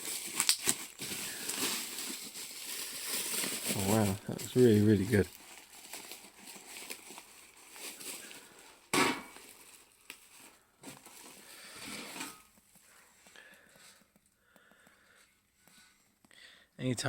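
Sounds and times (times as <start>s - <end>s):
packaging wrap rustling: 0.0s - 13.3s.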